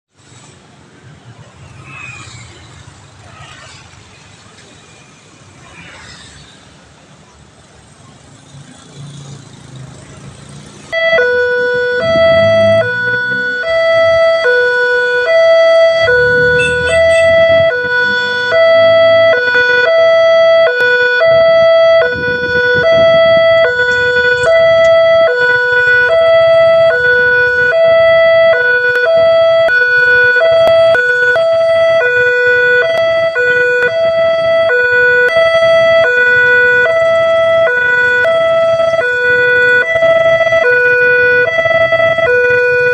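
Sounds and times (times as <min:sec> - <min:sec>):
passing vehicles rumbling: 0:00.1 - 0:42.9
two-tone crossing siren: 0:10.8 - 0:42.9.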